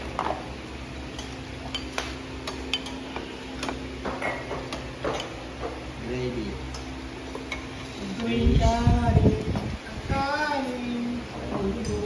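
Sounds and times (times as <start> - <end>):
steady low hum: 0.0 - 12.0
metal utensils clinking on dishes: 1.1 - 4.5.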